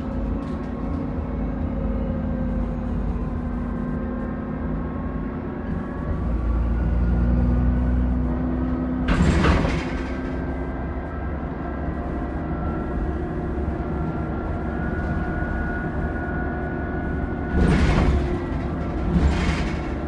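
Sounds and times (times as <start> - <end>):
bus diesel engine running: 0.0 - 20.0
turbo whine: 11.8 - 19.2.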